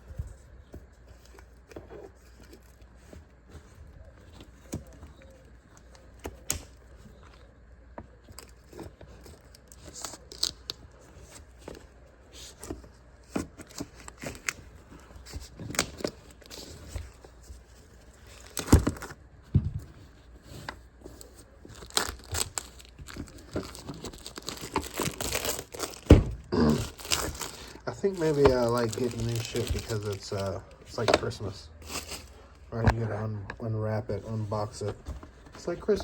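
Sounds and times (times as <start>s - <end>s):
packaging tearing and crinkling: 8.4s - 10.8s, 21.2s - 32.3s.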